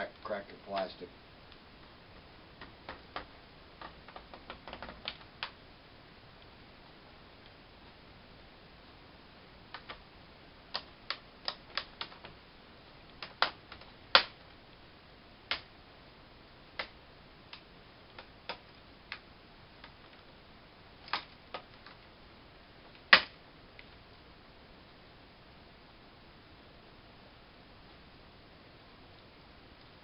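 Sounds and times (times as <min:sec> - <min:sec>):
plastic clips snapping: 0:21.0 - 0:22.0.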